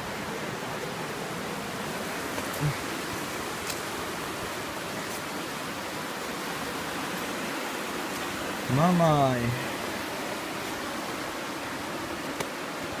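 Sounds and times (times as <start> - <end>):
fast-flowing river water: 0.0 - 13.0.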